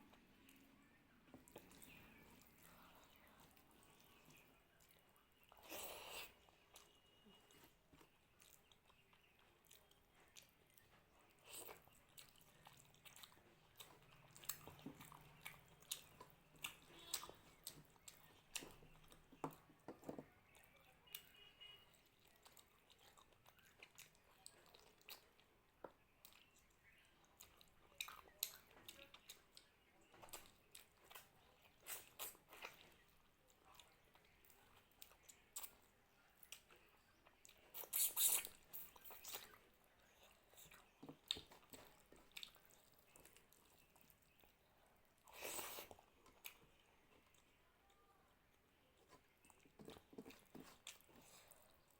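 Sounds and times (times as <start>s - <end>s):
chewing and mouth smacks: 0.1s - 51.9s.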